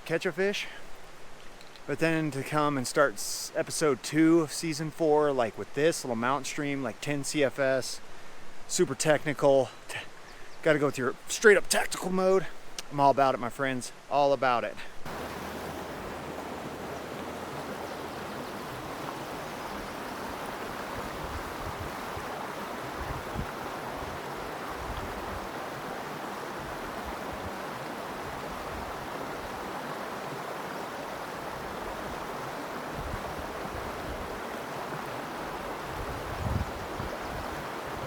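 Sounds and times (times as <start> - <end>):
creek running over rocks: 8.6 - 38.0.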